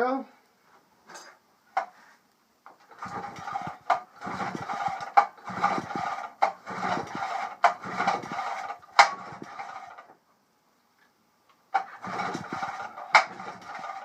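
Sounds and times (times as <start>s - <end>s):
outboard motor pull-starter whirring: 2.9s - 10.1s, 11.8s - 14.0s.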